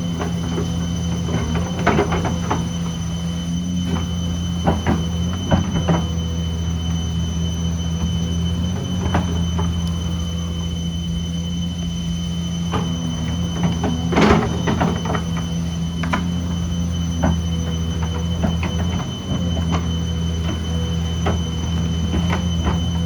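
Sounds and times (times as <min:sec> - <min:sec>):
excavator engine running: 0:00.0 - 0:23.0.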